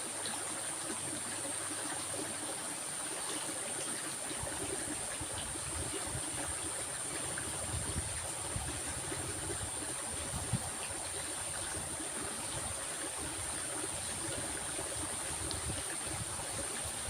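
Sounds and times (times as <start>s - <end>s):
stream water flowing: 0.0s - 17.0s.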